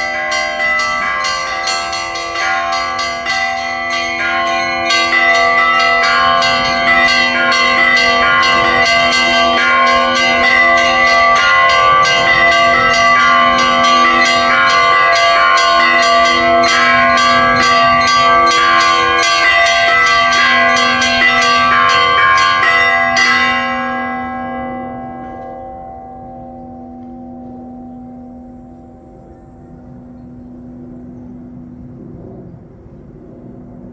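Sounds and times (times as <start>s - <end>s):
small bells struck rapidly: 0.0s - 23.8s
hum of larger bells: 0.0s - 33.9s.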